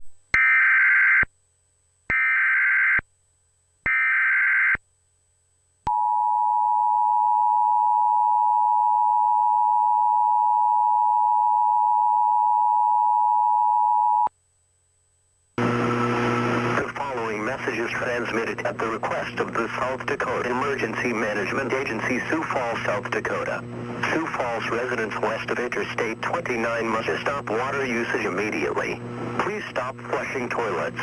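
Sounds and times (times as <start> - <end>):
person speaking: 16.7 - 31.0.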